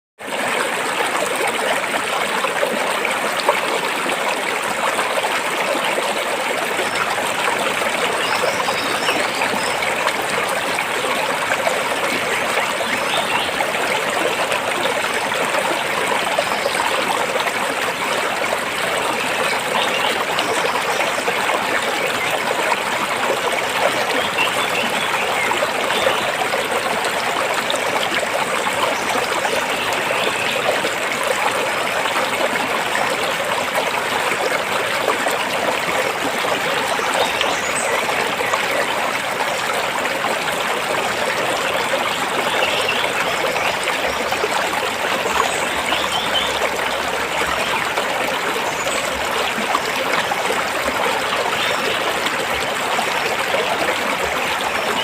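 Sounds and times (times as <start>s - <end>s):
stream water rushing over rocks: 0.2s - 55.0s.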